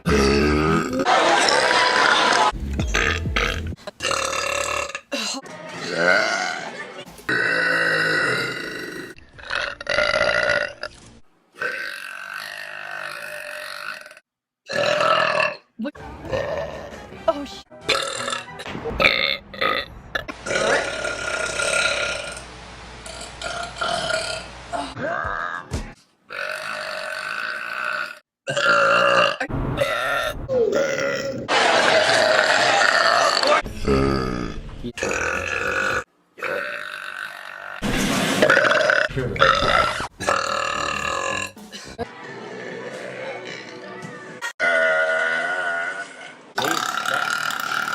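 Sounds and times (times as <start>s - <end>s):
woman burping: 0.0s - 1.7s, 3.0s - 6.7s, 7.3s - 10.7s, 19.6s - 22.4s, 26.3s - 30.0s, 38.5s - 42.1s, 46.6s - 47.9s
women belching: 0.0s - 6.7s, 7.3s - 10.7s, 20.4s - 22.4s, 26.3s - 37.8s, 38.5s - 41.6s, 42.4s - 44.0s, 44.6s - 45.9s, 46.6s - 47.9s.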